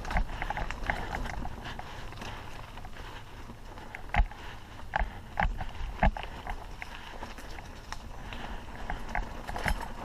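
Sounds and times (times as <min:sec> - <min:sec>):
bike clicks and rattles: 0:00.0 - 0:10.0
tyres rumbling on dirt: 0:00.0 - 0:10.0
wind: 0:00.0 - 0:10.0.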